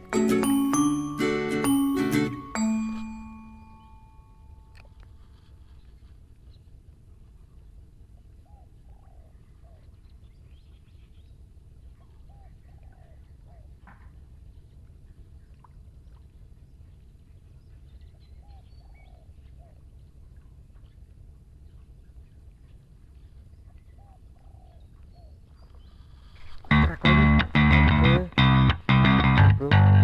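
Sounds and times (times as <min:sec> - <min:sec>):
bird calling rising and falling notes: 0:00.0 - 0:04.7
faint high chirps: 0:00.0 - 0:04.9.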